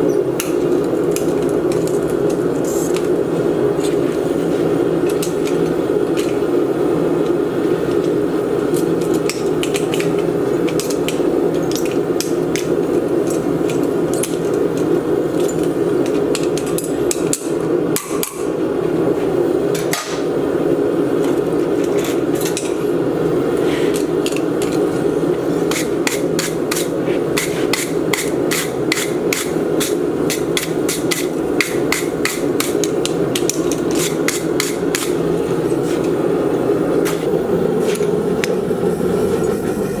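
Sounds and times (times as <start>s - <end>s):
hammer tapping steel pins: 25.7s - 35.2s.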